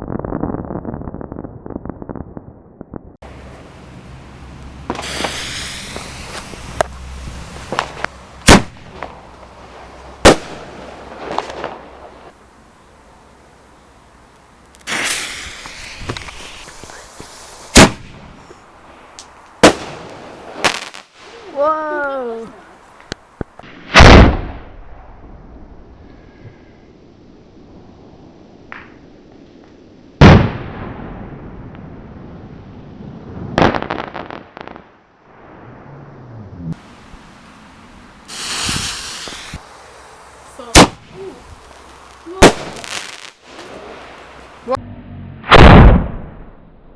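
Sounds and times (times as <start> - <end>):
fireworks bursting: 0.0 - 25.0, 36.8 - 44.8
faint firework cracks: 4.5 - 21.5, 36.8 - 44.7
loud sharp bang: 45.4 - 46.7.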